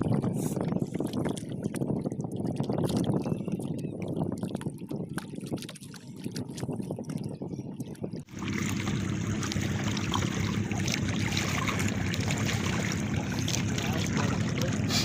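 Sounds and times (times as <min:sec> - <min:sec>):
water splashing: 0:00.0 - 0:15.0
boat knocking: 0:08.3 - 0:15.0
boat motor running: 0:08.3 - 0:15.0.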